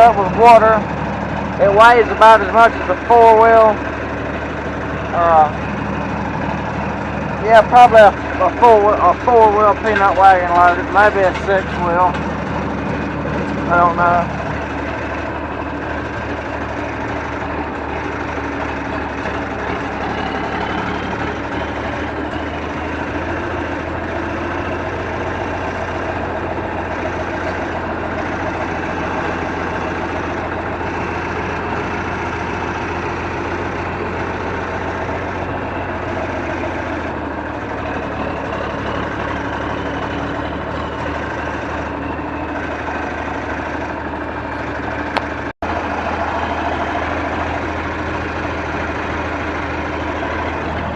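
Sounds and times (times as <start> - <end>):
tractor diesel engine under load: 0.0 - 50.9.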